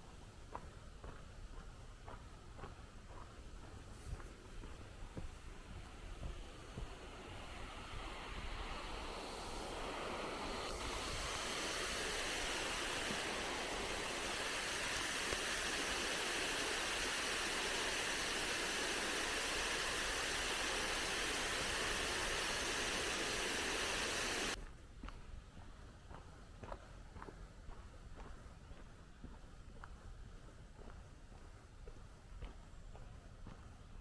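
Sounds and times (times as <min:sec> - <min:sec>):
creek water rushing: 0:06.5 - 0:24.6.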